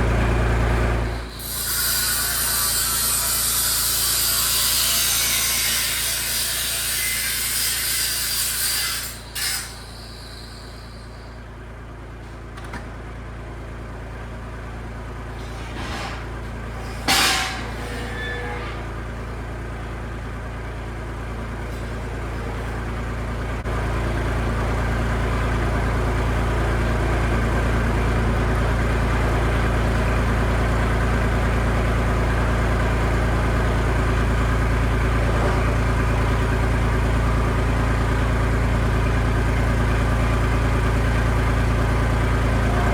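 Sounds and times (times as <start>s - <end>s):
tractor engine running: 0.0s - 1.4s, 18.6s - 42.9s.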